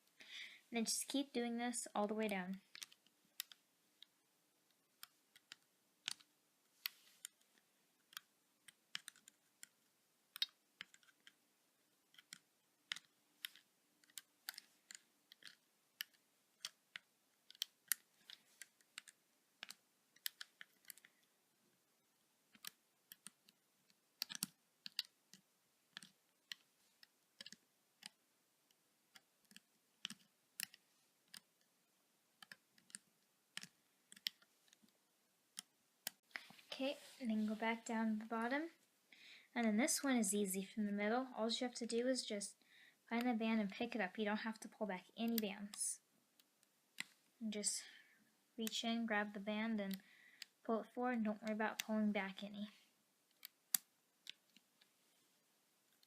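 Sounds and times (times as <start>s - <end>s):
plastic hook clicking on pegs: 2.2s - 4.1s, 5.0s - 11.4s, 12.1s - 21.3s, 22.5s - 31.8s, 32.4s - 36.2s, 45.3s - 45.8s, 46.4s - 47.8s, 53.3s - 54.9s.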